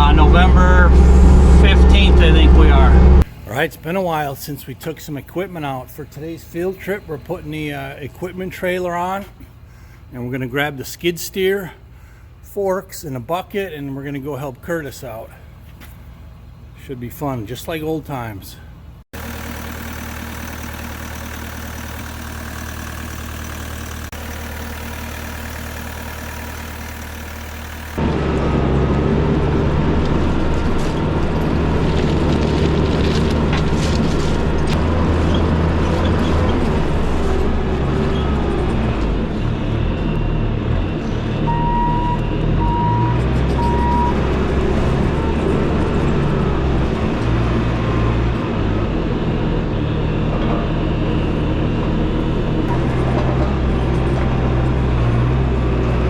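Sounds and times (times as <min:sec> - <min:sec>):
vehicle engine running: 0:00.0 - 0:03.7, 0:19.1 - 0:56.0
short even beeps: 0:41.5 - 0:44.2.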